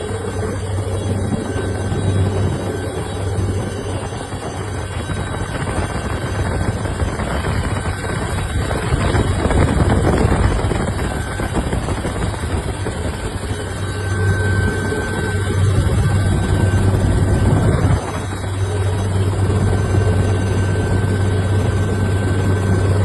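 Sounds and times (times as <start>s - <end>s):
helicopter engine rushing: 0.0s - 23.0s
helicopter rotor beat: 0.0s - 23.0s.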